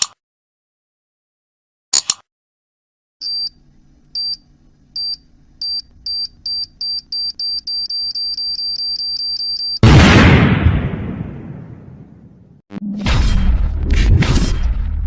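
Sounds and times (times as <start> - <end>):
electronic countdown beeps: 5.0 - 9.8
low hum: 11.8 - 15.0.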